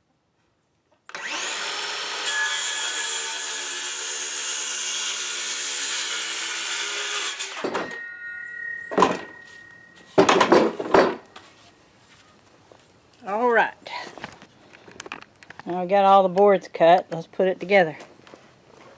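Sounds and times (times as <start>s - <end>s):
power saw cutting wood: 1.1s - 8.0s
sharp knocks and clatters: 8.9s - 9.4s, 10.1s - 11.4s.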